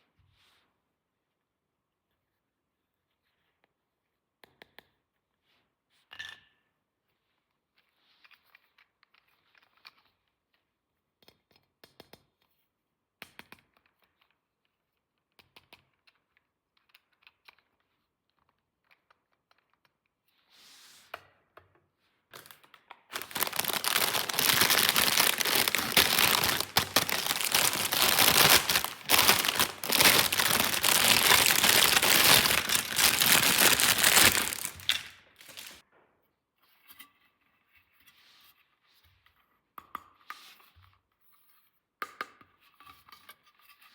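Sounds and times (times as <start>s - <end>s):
packaging crinkling and tearing: 23.1s - 35.8s.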